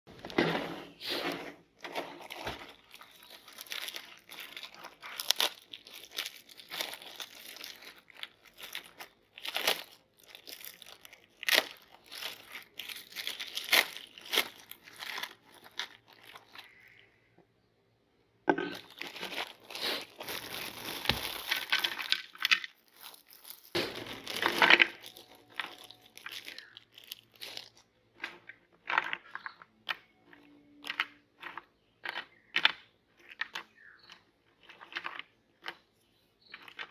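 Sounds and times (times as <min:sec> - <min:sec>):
meat grinder crunching cookies: 0:01.8 - 0:16.8.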